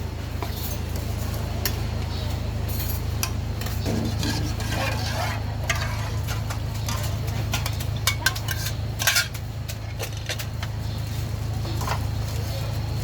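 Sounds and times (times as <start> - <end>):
steady low hum: 0.0 - 13.0
utensils and pots clinking: 0.4 - 12.7.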